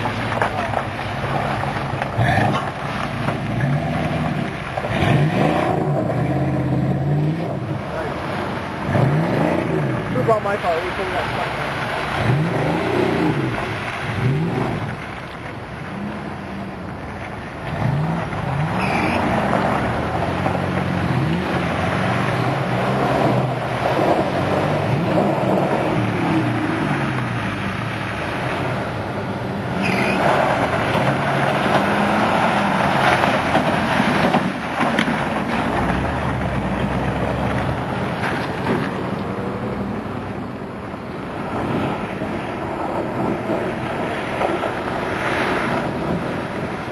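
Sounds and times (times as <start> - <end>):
truck engine revving: 0.0 - 15.2, 17.6 - 46.9.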